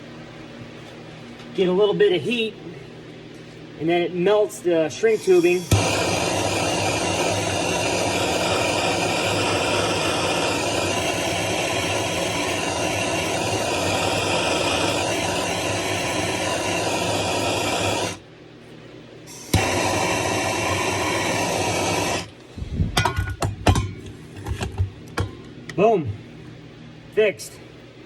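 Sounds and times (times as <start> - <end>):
heat gun blowing air: 5.0 - 18.2, 19.3 - 22.3.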